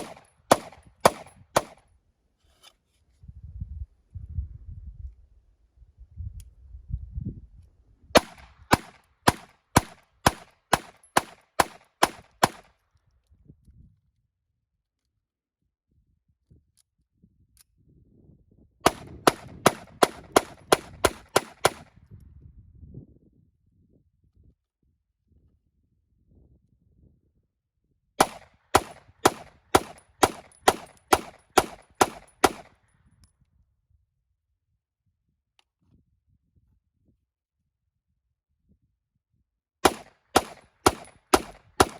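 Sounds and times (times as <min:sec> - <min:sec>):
gunshots: 0:00.0 - 0:01.8, 0:08.2 - 0:12.7, 0:18.9 - 0:21.9, 0:28.2 - 0:32.7, 0:39.8 - 0:41.9.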